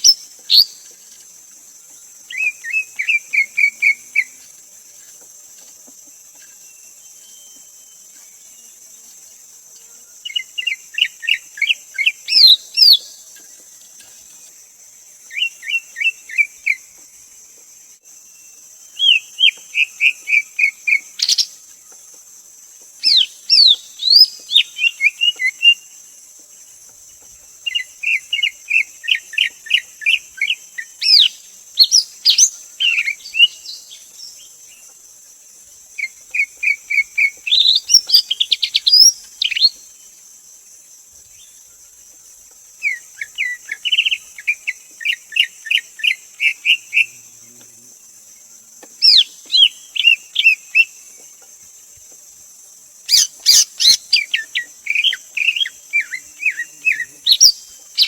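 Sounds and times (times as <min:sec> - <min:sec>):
bird singing whistled notes: 0:00.0 - 0:00.9, 0:02.3 - 0:04.4, 0:06.4 - 0:08.7, 0:10.3 - 0:13.2, 0:18.3 - 0:21.6, 0:23.0 - 0:25.8, 0:27.7 - 0:34.5, 0:36.0 - 0:39.8, 0:49.0 - 0:50.9, 0:53.1 - 0:58.0
high insect drone: 0:00.0 - 0:58.0.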